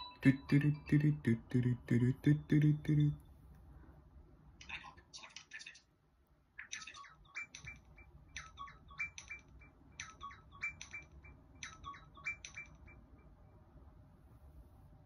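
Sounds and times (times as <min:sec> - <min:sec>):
watch ringtone chirping notes: 0:00.0 - 0:01.3, 0:07.3 - 0:13.4
low hum: 0:00.0 - 0:04.4.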